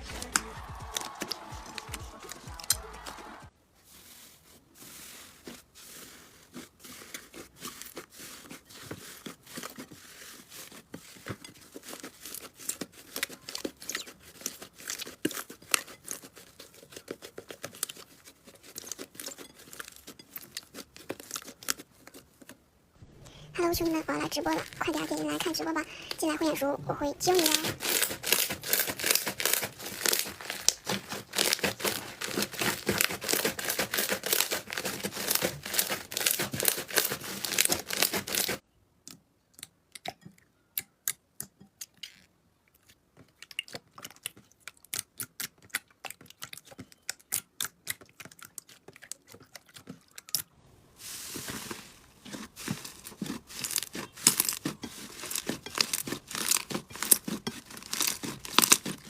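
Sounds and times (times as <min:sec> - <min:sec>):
slime crackling and popping: 0:23.2 - 0:38.6, 0:51.4 - 0:59.0.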